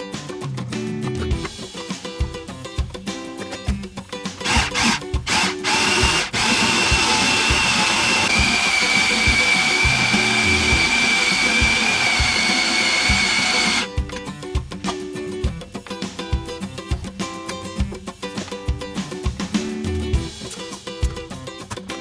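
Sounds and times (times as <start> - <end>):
blender motor whine: 4.4 - 13.9.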